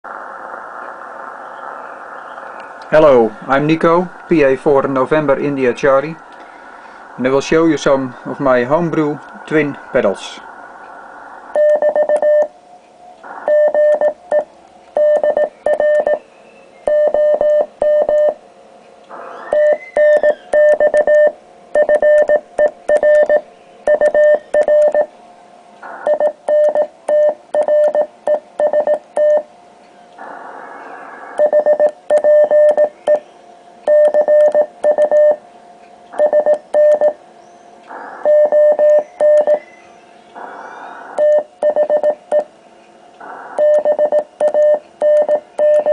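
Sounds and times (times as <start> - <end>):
morse code sidetone beeps: 11.6 - 12.5, 13.4 - 16.2, 16.9 - 18.4, 19.5 - 25.1, 26.0 - 29.5, 31.4 - 33.2, 33.9 - 35.4, 36.2 - 37.2, 38.2 - 39.7, 41.2 - 42.5, 43.6 - 45.9.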